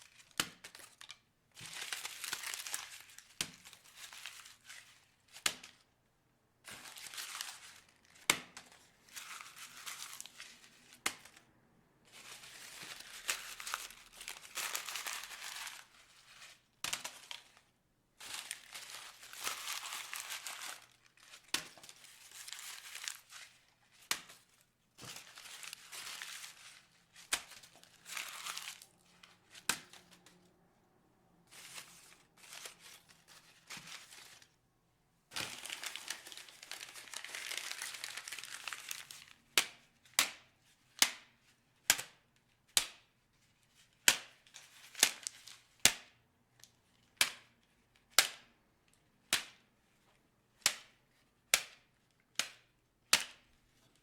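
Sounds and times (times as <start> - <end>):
paper crinkling and rustling: 0.0 - 5.9, 6.6 - 11.4, 12.1 - 30.6, 31.5 - 34.6, 35.3 - 39.8, 43.4 - 45.8.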